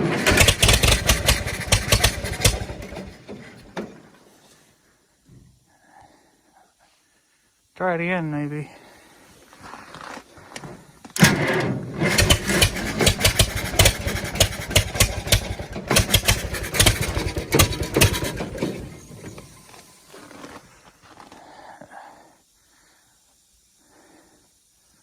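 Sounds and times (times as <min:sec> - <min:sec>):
tractor engine cranking on starter: 0:00.0 - 0:04.3, 0:10.0 - 0:21.4.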